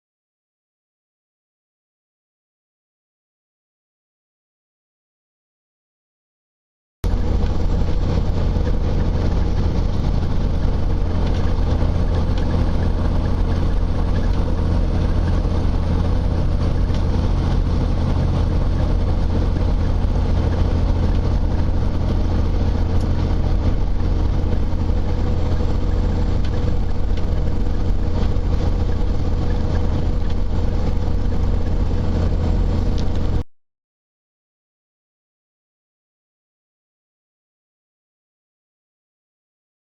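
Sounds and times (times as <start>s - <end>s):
vehicle engine deep rumble: 7.0s - 33.5s.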